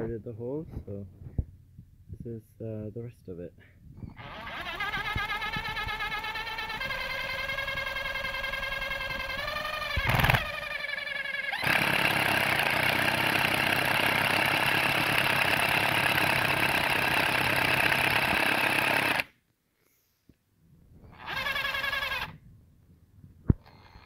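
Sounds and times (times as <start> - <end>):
power drill boring into wood: 4.1 - 19.3, 21.1 - 22.4.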